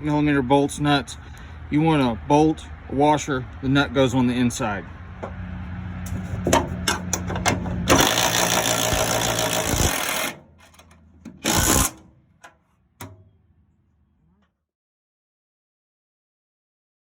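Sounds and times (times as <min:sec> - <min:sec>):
sharp metallic clicks: 0:06.6 - 0:13.3
power tool whirring: 0:07.1 - 0:12.1.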